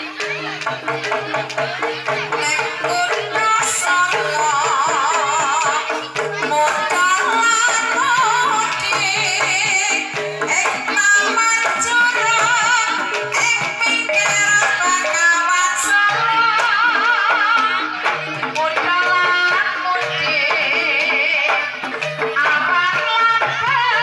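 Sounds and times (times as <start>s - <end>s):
woman singing with vibrato: 1.7s - 24.0s.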